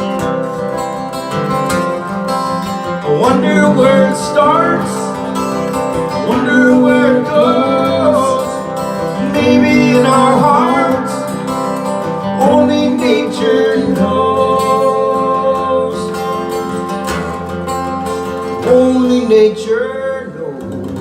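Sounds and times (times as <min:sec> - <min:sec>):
live band with acoustic guitar: 0:00.0 - 0:21.0
person singing: 0:03.0 - 0:17.0, 0:18.5 - 0:21.0.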